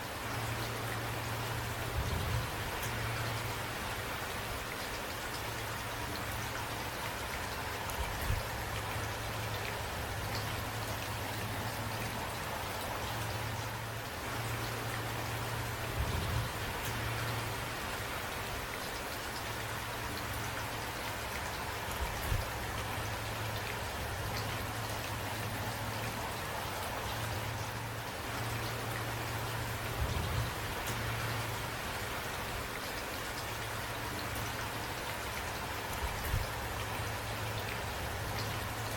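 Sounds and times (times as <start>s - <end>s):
rain falling: 0.0s - 38.9s.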